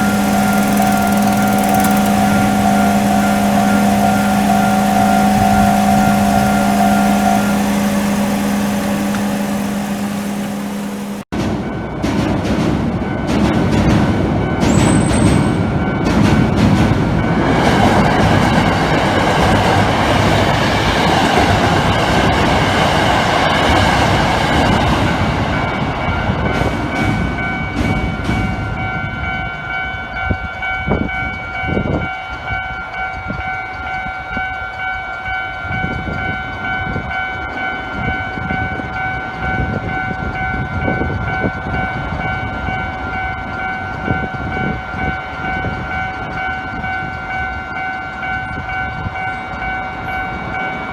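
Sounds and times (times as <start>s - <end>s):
level crossing warning bell: 0.0s - 11.2s, 26.9s - 50.9s
train rumble and wheel noise: 0.0s - 50.9s.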